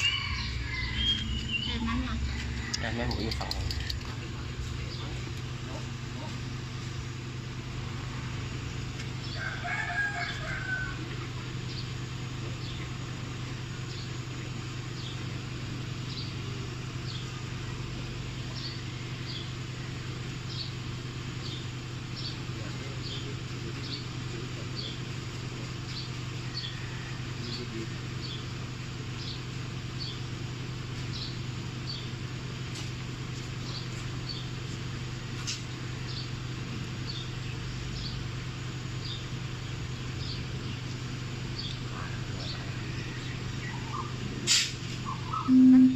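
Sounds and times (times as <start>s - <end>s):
rooster crowing: 0.0s - 3.4s, 9.2s - 11.2s, 26.5s - 28.0s
steady low hum: 0.0s - 45.9s
short high chirps: 45.4s - 45.9s.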